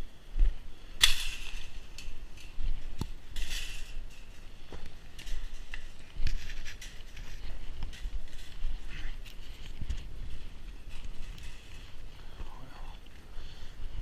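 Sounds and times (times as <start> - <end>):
rustle: 0.0 - 14.0
wind rumbling on microphone: 0.0 - 14.0
metal fence clinking and rattling: 1.0 - 9.5, 10.8 - 12.0.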